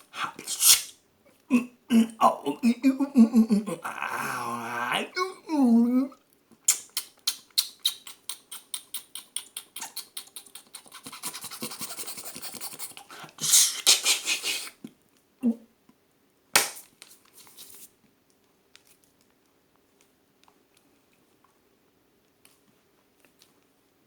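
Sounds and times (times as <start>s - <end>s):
mouth hissing burst: 0.0s - 1.0s, 13.4s - 14.8s
rapid tongue clicks: 6.6s - 13.1s.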